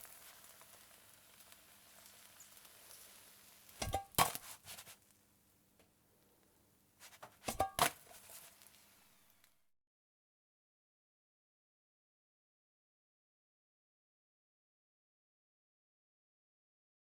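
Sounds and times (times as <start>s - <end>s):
meat sizzling in a pan: 0.0s - 4.9s.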